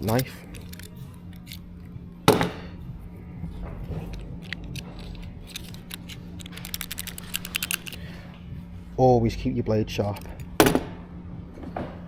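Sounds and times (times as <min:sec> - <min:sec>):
utility knife blade slider clicking: 0:00.0 - 0:01.6
faint steady hum: 0:00.0 - 0:12.0.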